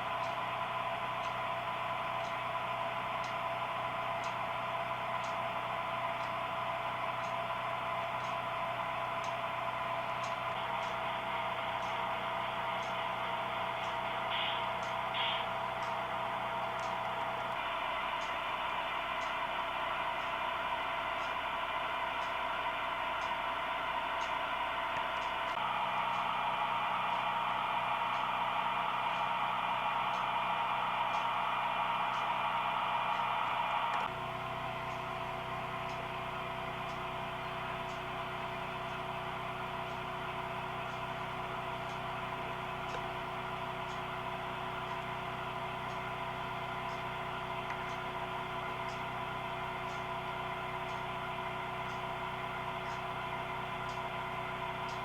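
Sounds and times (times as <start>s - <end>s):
model train humming: 0.0s - 55.0s
faint ticking: 5.1s - 5.5s, 48.8s - 49.1s.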